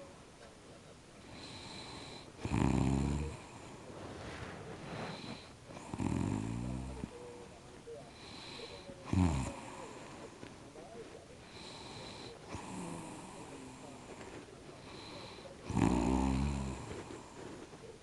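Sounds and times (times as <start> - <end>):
person snoring: 1.3 - 3.6, 5.1 - 7.1, 8.2 - 10.0, 11.5 - 13.9, 14.9 - 17.0
snorting: 1.3 - 7.2, 8.2 - 10.3, 11.4 - 17.9.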